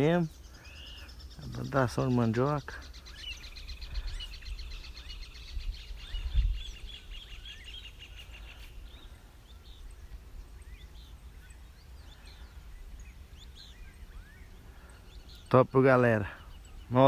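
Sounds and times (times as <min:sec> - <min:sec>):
birds chirping: 0:00.0 - 0:17.0
wind on microphone: 0:03.3 - 0:07.9.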